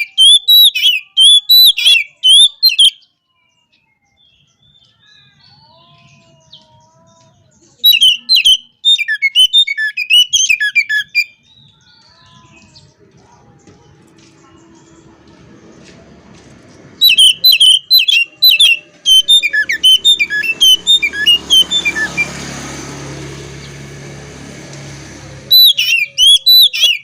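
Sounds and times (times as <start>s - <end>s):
bird whistling and chirping: 0.0s - 4.9s, 7.8s - 11.7s, 17.0s - 22.3s, 25.5s - 27.0s.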